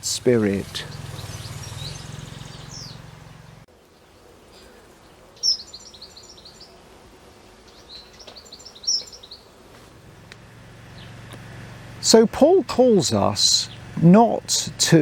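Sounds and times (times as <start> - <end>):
faint outdoor background noise: 0.0 - 15.0
small songbird singing: 0.2 - 3.7, 4.5 - 6.8, 7.7 - 9.5, 10.9 - 11.3, 12.0 - 14.9.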